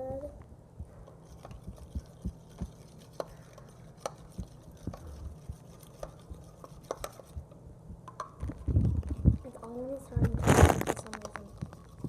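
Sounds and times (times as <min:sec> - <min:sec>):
low steady hum: 0:00.0 - 0:12.0
spoon scraping in a bowl: 0:01.1 - 0:07.4.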